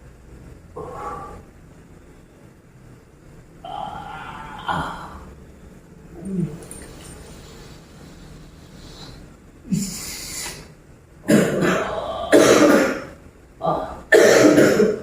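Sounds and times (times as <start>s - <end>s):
person coughing: 11.2s - 13.1s, 13.7s - 15.0s.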